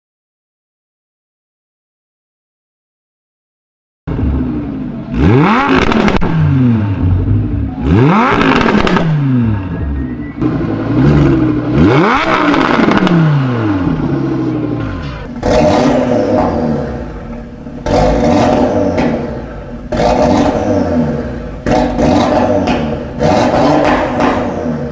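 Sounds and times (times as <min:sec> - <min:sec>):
car engine revving: 0:04.1 - 0:24.9
exhaust crackles and pops: 0:21.6 - 0:24.9.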